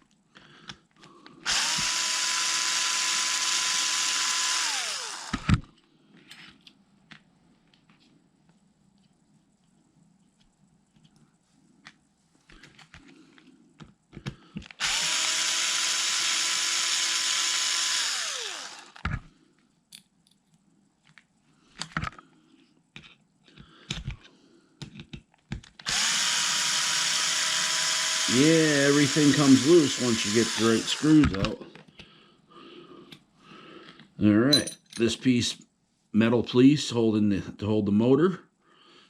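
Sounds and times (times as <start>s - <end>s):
electric screwdriver whining: 1.4s - 5.6s, 14.7s - 19.3s, 25.8s - 31.6s.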